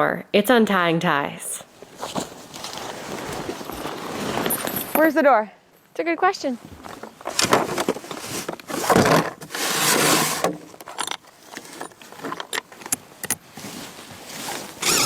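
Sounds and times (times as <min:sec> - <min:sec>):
tent fabric rustling: 0:01.7 - 0:05.1, 0:06.5 - 0:10.4, 0:13.4 - 0:15.0.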